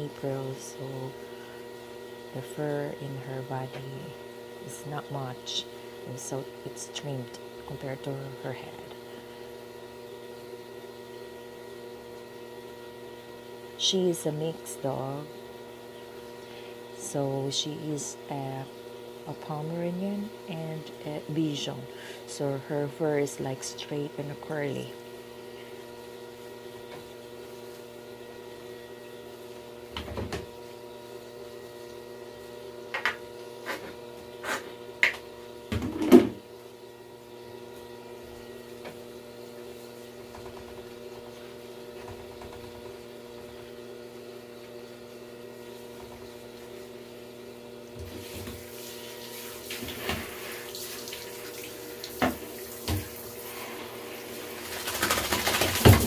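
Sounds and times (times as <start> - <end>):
steady hum: 0.0 - 56.0
shower water running: 48.1 - 56.0.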